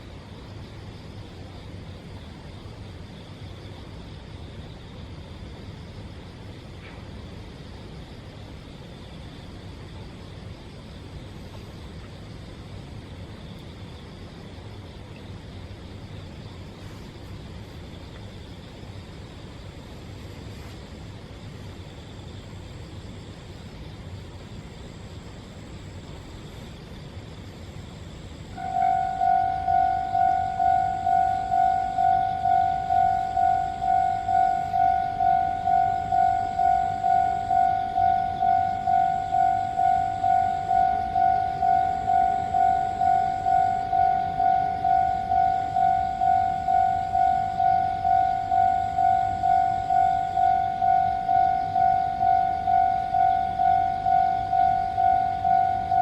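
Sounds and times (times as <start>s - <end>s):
low background rumble: 0.0s - 56.0s
level crossing warning bell: 28.5s - 56.0s.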